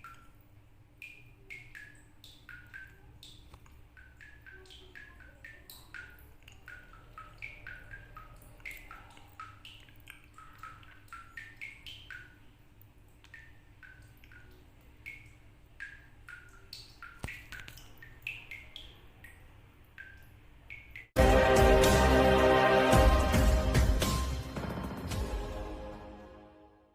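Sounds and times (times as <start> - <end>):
water dripping from a tap: 0.0 - 21.2.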